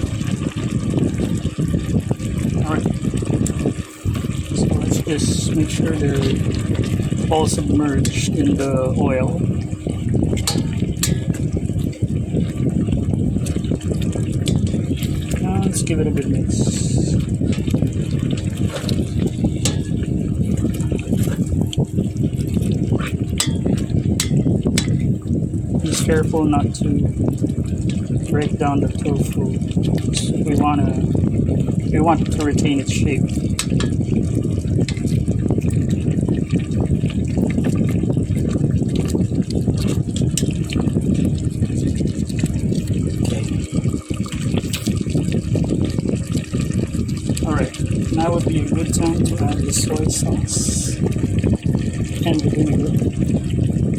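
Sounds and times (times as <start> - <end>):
oil bubbling in a pan: 0.0 - 53.9
utensil clicking against pan: 10.4 - 11.5, 23.0 - 25.1, 33.5 - 34.0.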